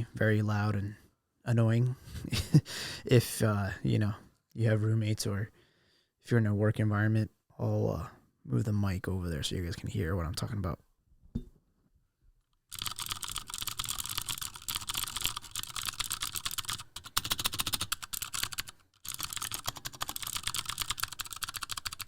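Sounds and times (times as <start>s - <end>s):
fast mechanical keyboard typing: 12.7s - 22.0s.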